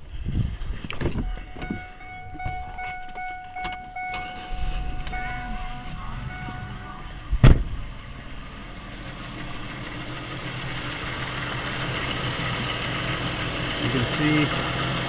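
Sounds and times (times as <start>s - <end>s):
car engine idling: 0.0s - 15.0s
loud thump: 4.5s - 8.0s.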